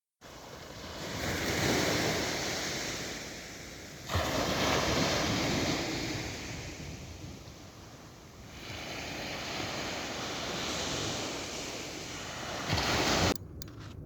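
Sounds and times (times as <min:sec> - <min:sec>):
sea water: 0:00.2 - 0:13.9
wind on microphone: 0:01.0 - 0:14.0.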